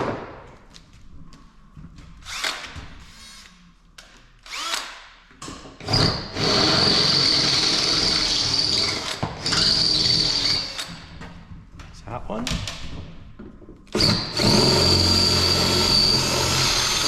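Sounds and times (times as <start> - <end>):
electric drill whirring: 2.2 - 3.5, 4.4 - 5.0, 5.9 - 11.0, 14.0 - 17.0.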